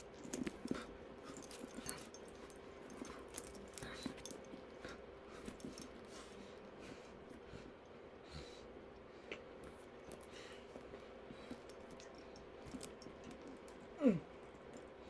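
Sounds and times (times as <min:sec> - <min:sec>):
handbag rustling and clicking: 0:00.0 - 0:06.4, 0:09.7 - 0:13.9
faint steady hum: 0:00.0 - 0:15.0.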